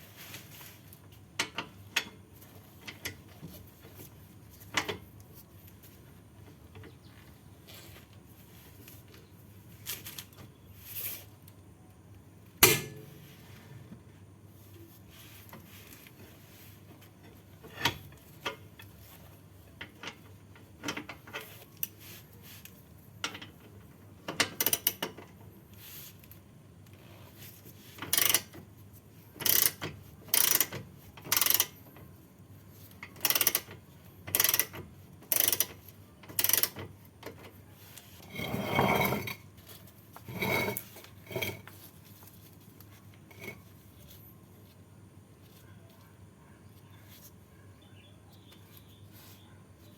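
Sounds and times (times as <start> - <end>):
ratchet wrench clicking: 28.1 - 28.5, 29.4 - 31.8, 33.2 - 33.7, 34.3 - 36.8.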